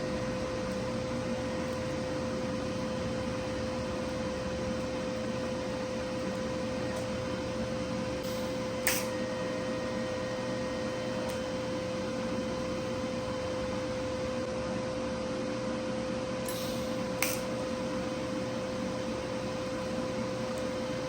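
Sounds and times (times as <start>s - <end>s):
welder arc buzzing and hissing: 0.0s - 14.5s, 16.4s - 21.0s
short click: 8.2s - 9.2s, 16.5s - 17.5s.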